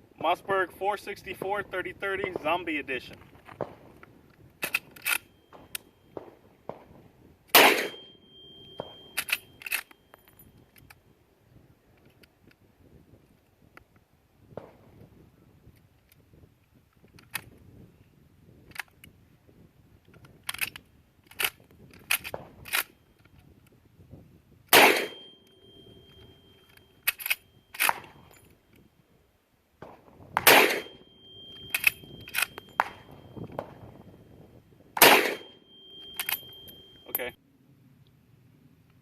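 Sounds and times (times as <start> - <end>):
metallic clicks of rifle action: 4.3 - 5.9, 9.2 - 11.0, 16.9 - 17.6, 18.7 - 19.1, 20.0 - 23.8, 25.0 - 28.9, 31.5 - 33.7, 35.0 - 37.3
steady ringing tone: 5.2 - 6.2, 7.8 - 10.8, 25.1 - 28.5, 30.8 - 34.8, 35.4 - 37.4
rifle shots: 7.5 - 8.2, 24.7 - 25.4, 29.8 - 33.8, 35.0 - 36.4.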